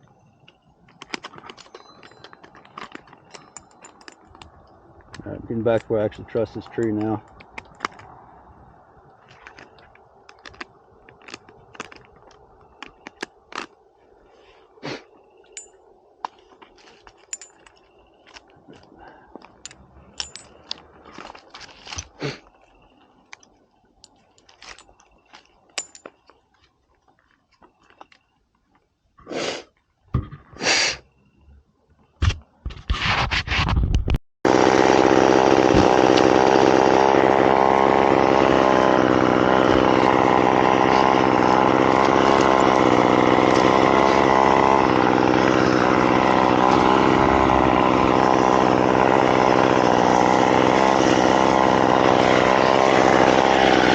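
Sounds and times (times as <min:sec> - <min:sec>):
chainsaw starter cord pulls: 0:00.4 - 0:08.1, 0:09.2 - 0:13.8, 0:16.3 - 0:28.3, 0:34.5 - 0:53.9
chainsaw engine running: 0:05.2 - 0:07.2, 0:34.5 - 0:53.9.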